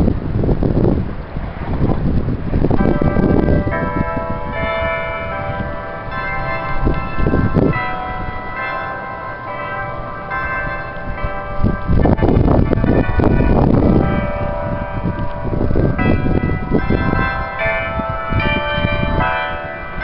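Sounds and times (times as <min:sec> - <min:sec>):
church bells ringing: 0:02.0 - 0:20.0.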